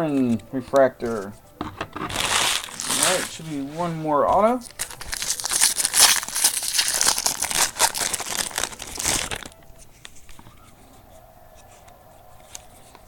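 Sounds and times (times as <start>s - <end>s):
cards being handled: 0.0s - 10.7s
wrapper crinkling and tearing: 2.0s - 3.8s, 4.4s - 9.6s.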